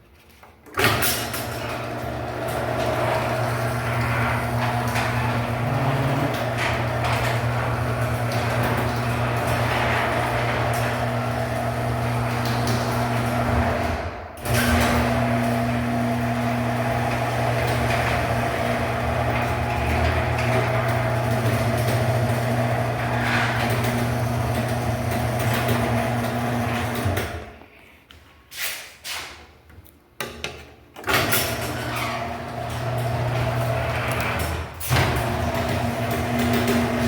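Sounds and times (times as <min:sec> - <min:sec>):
garage door opener motor humming: 0:00.8 - 0:27.6, 0:31.0 - 0:37.0.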